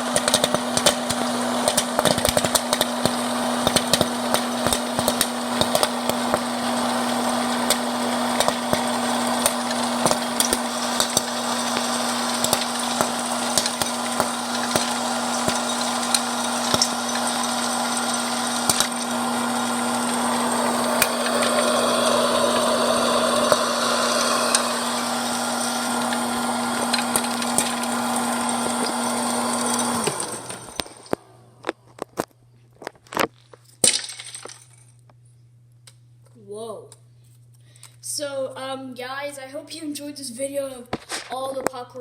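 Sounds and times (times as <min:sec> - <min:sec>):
popcorn popping: 0:00.0 - 0:34.8, 0:40.9 - 0:41.8
cooking appliance hum: 0:00.0 - 0:39.4.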